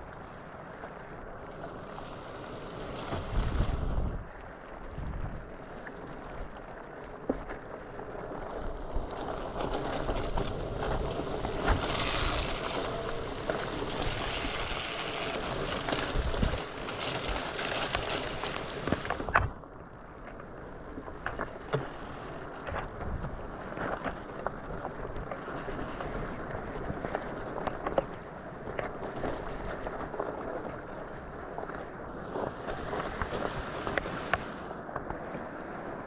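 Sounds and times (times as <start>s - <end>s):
wind buffeting microphone: 2.6s - 4.3s, 8.2s - 19.6s
bike knocking over rocks: 8.2s - 19.6s
rushing splashing water: 8.7s - 19.6s.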